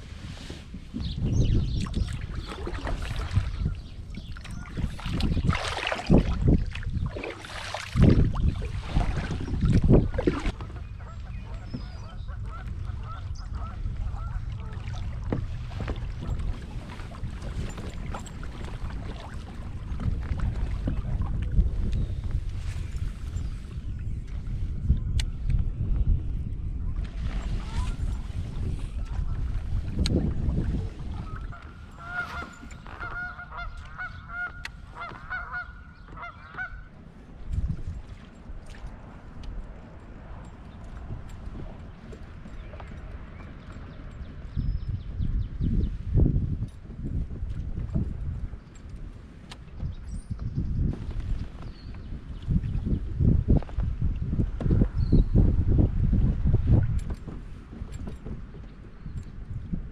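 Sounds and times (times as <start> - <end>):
strong wind buffeting microphone: 0.0 - 59.9
geese honking: 31.3 - 36.9.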